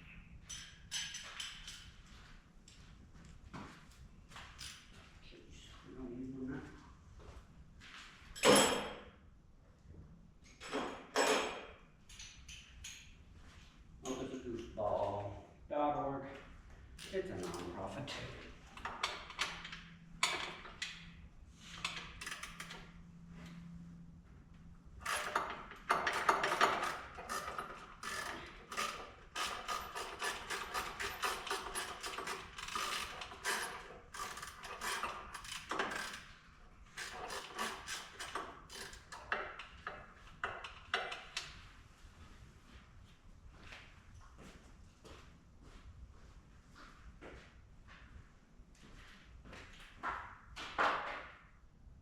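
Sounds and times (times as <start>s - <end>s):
tools clicking and rattling: 0.5s - 2.0s, 10.5s - 13.2s, 18.6s - 22.9s, 25.0s - 36.3s, 36.9s - 41.6s.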